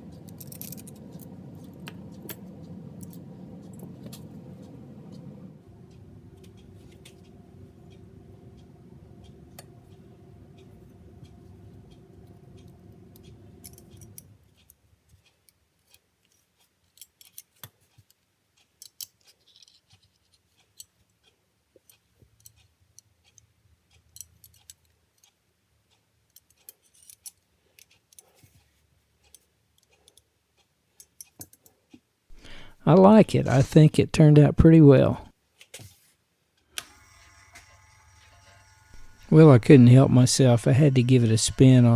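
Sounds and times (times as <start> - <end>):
steady hum: 0.0 - 14.5, 32.3 - 35.3, 36.8 - 41.9.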